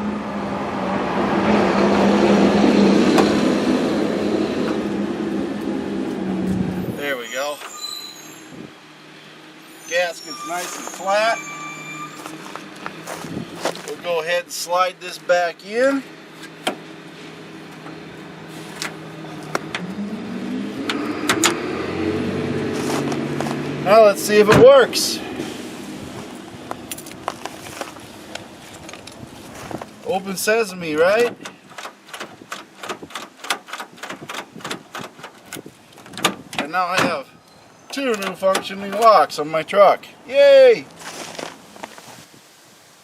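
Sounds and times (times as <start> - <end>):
vehicle passing by: 0.0 - 7.0, 16.8 - 30.4
lock cylinder clicks and knocks: 31.4 - 36.7.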